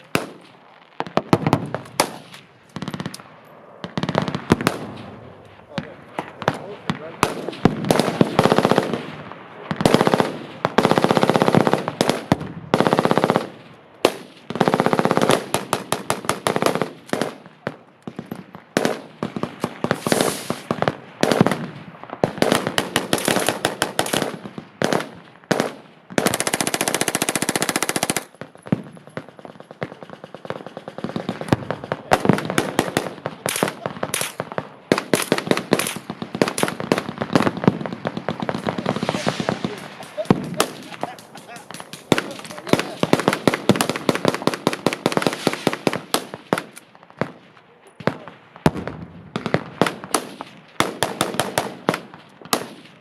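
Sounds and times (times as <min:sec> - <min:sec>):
machine gun automatic fire: 0:22.4 - 0:25.0.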